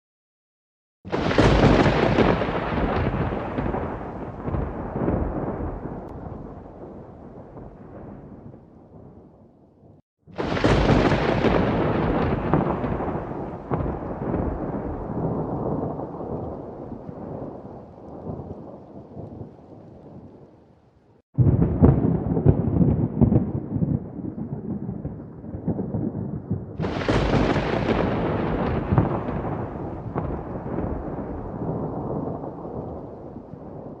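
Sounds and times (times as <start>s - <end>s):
sharp thunder crack: 1.1s - 9.3s, 10.3s - 17.6s, 21.4s - 34.0s
thunder rumbling: 1.1s - 20.5s, 21.4s - 34.0s.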